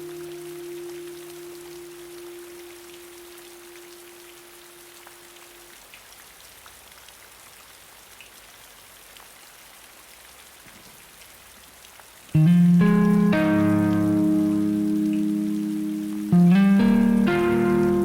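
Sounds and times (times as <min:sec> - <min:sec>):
rain falling: 0:00.0 - 0:18.0
guitar note: 0:12.4 - 0:18.0.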